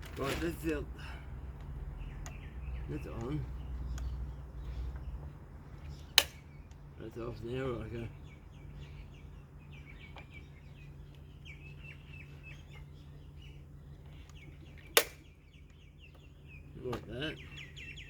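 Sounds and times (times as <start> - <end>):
small birds chirping: 0.0 - 18.0
sharp click: 6.2 - 6.8.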